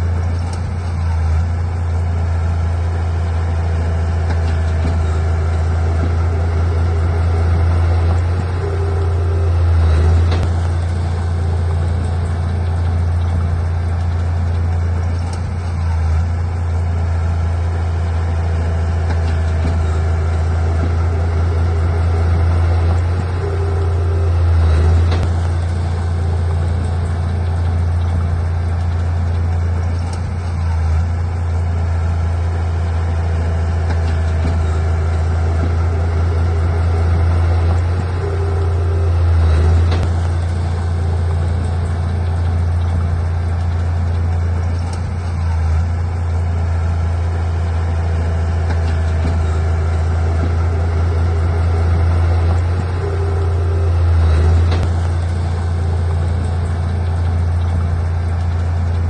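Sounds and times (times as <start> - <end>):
diesel engine running: 0.0 - 59.0.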